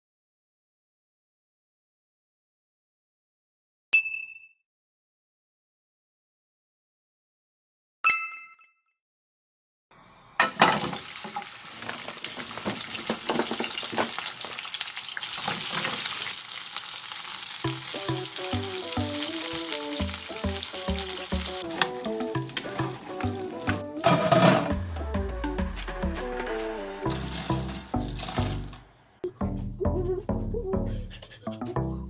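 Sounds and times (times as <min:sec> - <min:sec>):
food sizzling in a pan: 0:10.4 - 0:24.8, 0:26.3 - 0:28.2
background music: 0:17.6 - 0:32.0.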